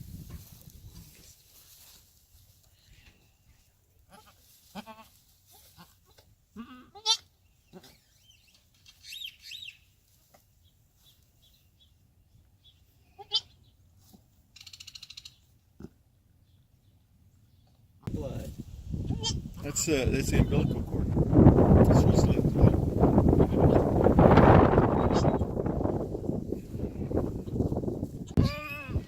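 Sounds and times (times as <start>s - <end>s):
goats bleating: 4.1s - 5.2s, 28.4s - 29.0s.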